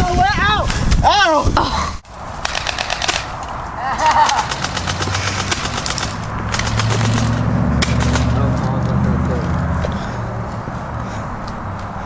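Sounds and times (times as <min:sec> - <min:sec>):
airsoft guns firing bursts: 0:02.4 - 0:03.4, 0:04.3 - 0:08.4.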